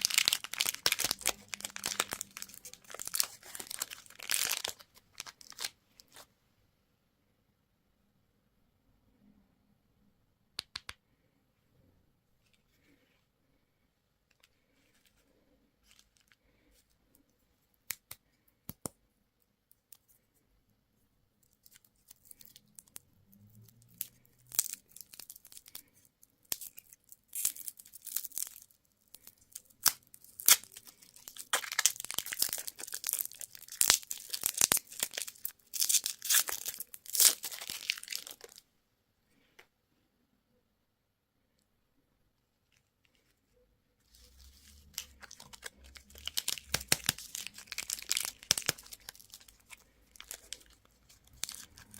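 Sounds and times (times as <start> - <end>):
candy wrapper crinkling: 0.0 - 6.3, 21.4 - 38.7, 44.0 - 51.9.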